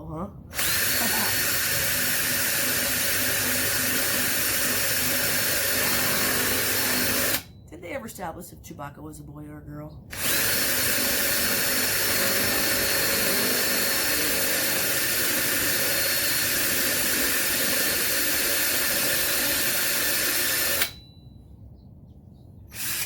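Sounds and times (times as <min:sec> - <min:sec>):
power drill boring metal: 0:00.5 - 0:07.5, 0:10.1 - 0:21.0, 0:22.7 - 0:23.0.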